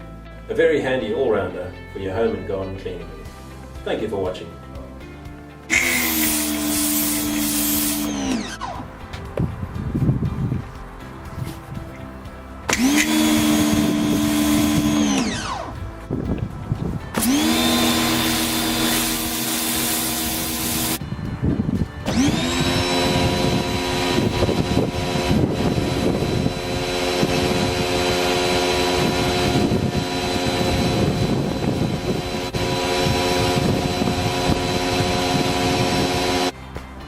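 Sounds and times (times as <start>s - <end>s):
hissing water spray: 5.7s - 8.4s, 17.2s - 21.0s
pressure washer motor humming: 5.7s - 9.0s, 12.7s - 15.8s, 17.0s - 21.0s, 22.0s - 36.5s.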